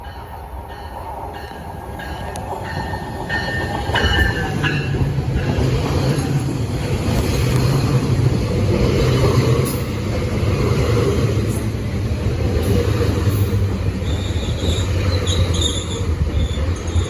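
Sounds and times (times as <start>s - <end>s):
low steady train hum: 0.0s - 17.0s
train rumble: 0.0s - 17.0s
high wheel squeals: 14.0s - 17.0s.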